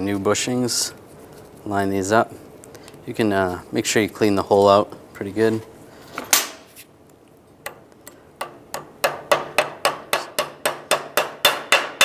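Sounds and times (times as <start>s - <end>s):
hammer striking metal punch: 7.7s - 12.0s.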